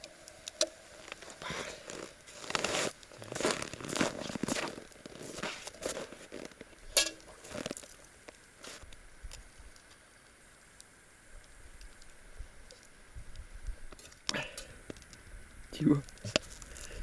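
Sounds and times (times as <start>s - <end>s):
dog chewing and crunching food: 1.0s - 8.1s.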